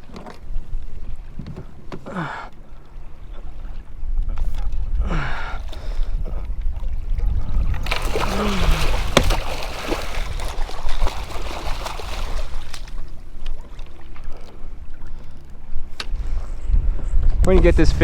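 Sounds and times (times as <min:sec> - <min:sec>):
wind rumbling on microphone: 0:03.1 - 0:18.0
water splashing: 0:05.3 - 0:15.1.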